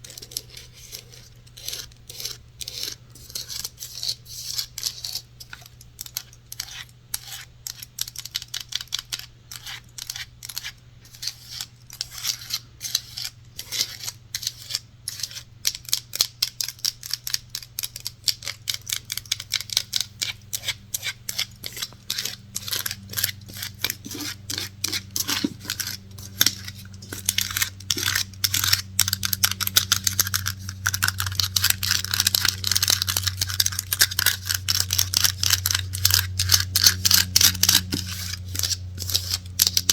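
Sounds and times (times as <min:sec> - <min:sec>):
low steady hum: 0:00.0 - 0:39.9
rapid tapping and scratching: 0:21.7 - 0:39.9.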